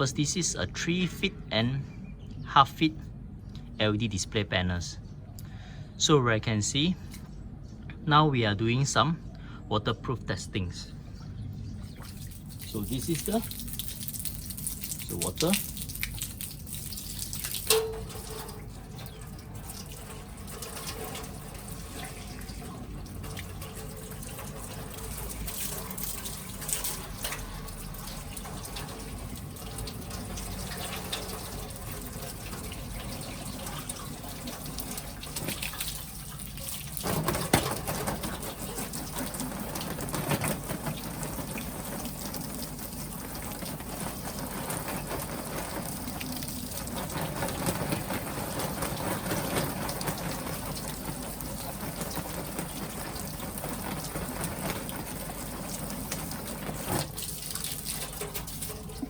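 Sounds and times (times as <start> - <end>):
water splashing on panel: 11.8 - 59.0.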